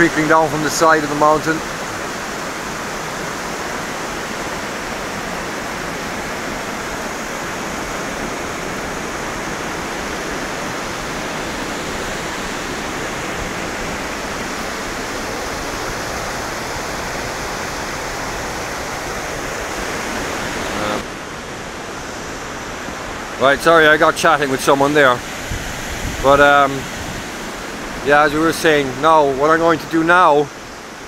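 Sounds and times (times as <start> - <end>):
waterfall rushing: 0.0 - 31.0.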